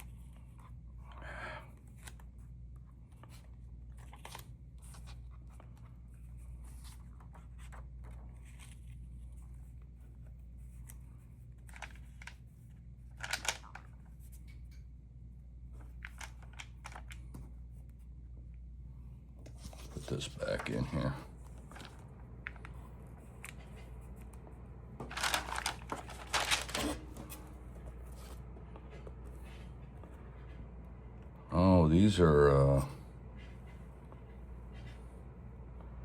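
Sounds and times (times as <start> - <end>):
paper rustling and crinkling: 1.8 - 14.7, 19.4 - 30.6.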